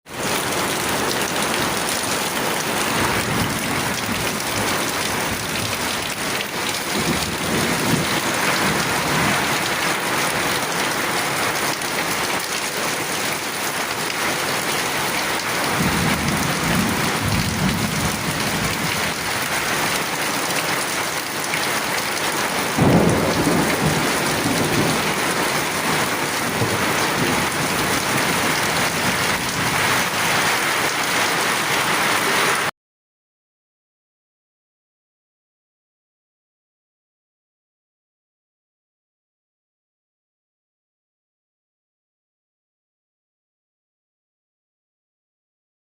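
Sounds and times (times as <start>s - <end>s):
heavy rain: 0.1s - 32.7s
thunder rumbling: 0.2s - 11.1s, 15.6s - 19.9s, 22.7s - 30.5s.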